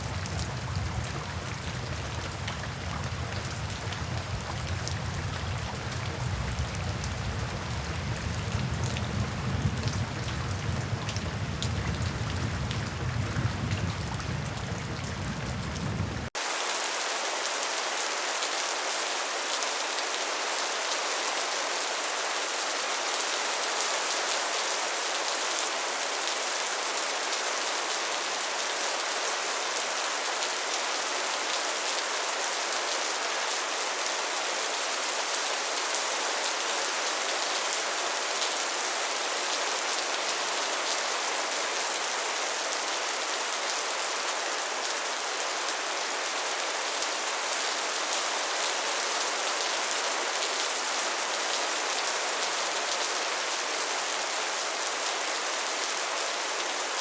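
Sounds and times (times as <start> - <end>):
rain hiss: 0.0 - 57.0
rain on a tin roof: 0.0 - 57.0.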